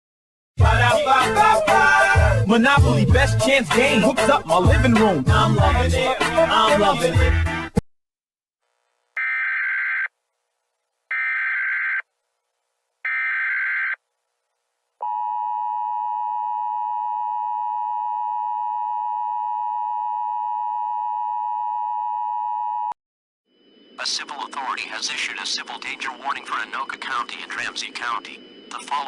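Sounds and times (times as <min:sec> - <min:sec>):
steady attention tone: 0:23.5 - 0:29.0
screeching data bursts: 0:24.0 - 0:29.0.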